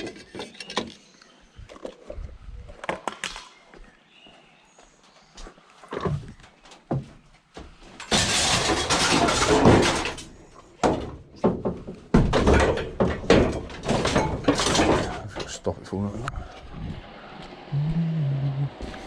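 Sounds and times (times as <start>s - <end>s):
scrap metal scraping: 8.0s - 10.4s
scrap metal clanking: 8.0s - 11.2s, 12.4s - 15.7s.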